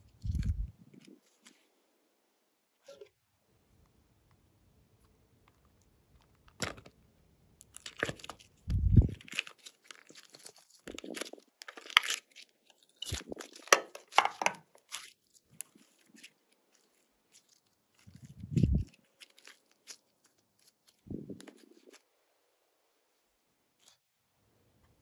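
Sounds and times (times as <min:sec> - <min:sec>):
hands squeezing slime: 0:07.6 - 0:22.1.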